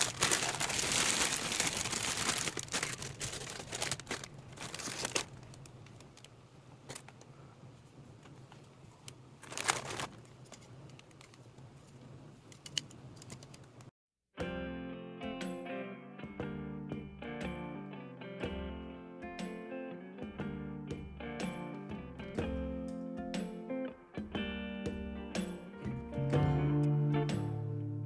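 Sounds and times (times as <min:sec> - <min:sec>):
crinkling and rustling: 0:00.0 - 0:13.9.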